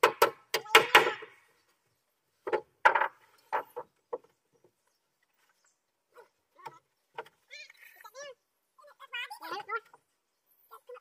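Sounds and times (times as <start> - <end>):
wooden knocks and clunks: 0.0 - 1.5, 2.4 - 7.5.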